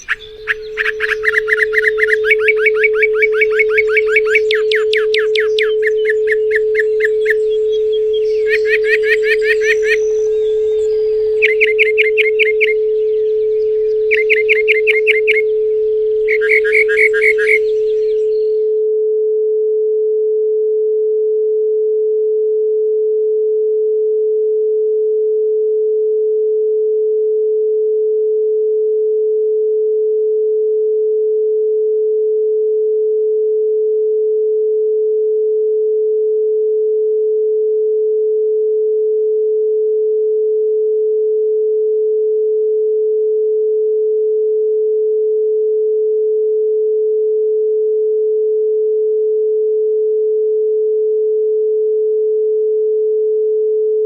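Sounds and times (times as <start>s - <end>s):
steady sine tone: 0.0s - 29.1s.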